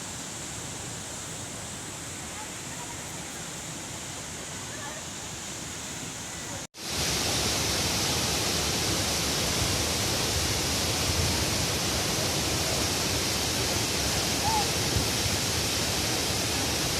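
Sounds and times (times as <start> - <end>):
waterfall rushing: 0.0 - 16.9.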